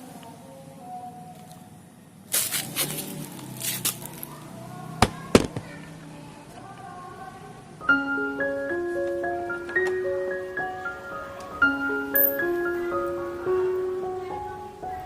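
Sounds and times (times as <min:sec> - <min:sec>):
glockenspiel-like background music: 0:08.0 - 0:14.6.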